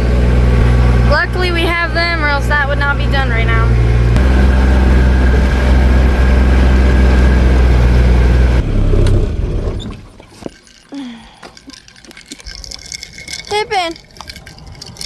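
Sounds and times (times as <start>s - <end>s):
vehicle engine humming: 0.0s - 10.2s.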